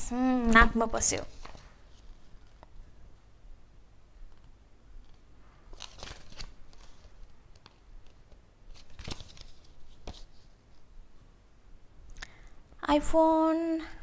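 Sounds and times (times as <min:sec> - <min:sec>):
packaging rustling and crunching: 0:05.1 - 0:10.0.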